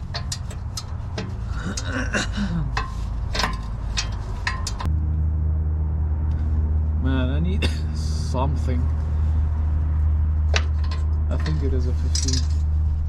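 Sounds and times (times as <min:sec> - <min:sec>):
wrench clinking on metal bolts: 0:00.0 - 0:01.9, 0:02.7 - 0:04.9, 0:10.5 - 0:12.6
person grunting: 0:01.6 - 0:02.7.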